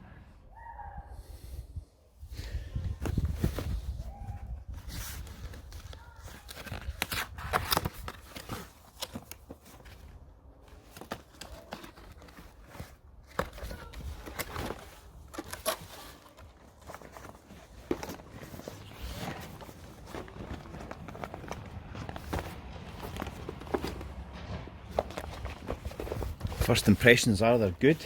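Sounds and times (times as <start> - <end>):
packaging tearing and crinkling: 5.0 - 10.1, 10.7 - 28.0
handling knocks: 16.8 - 28.0.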